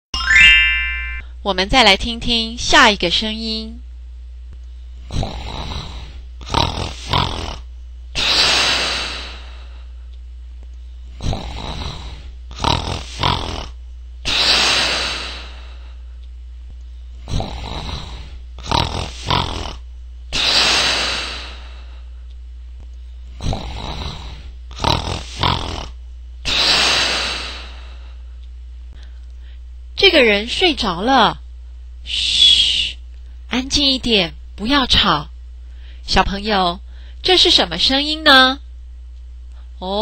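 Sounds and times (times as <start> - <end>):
person snoring: 5.0 - 7.6, 11.2 - 15.8, 17.2 - 19.8, 23.4 - 27.8.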